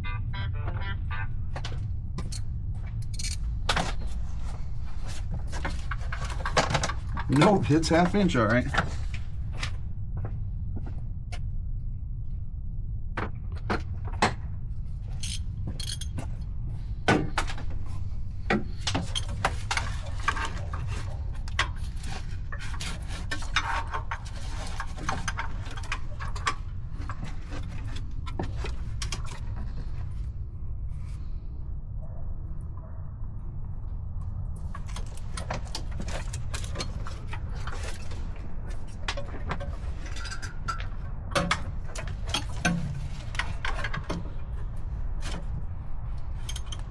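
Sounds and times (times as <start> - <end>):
steady low rumble: 0.0 - 46.9
metal hand tools clinking: 3.0 - 3.4.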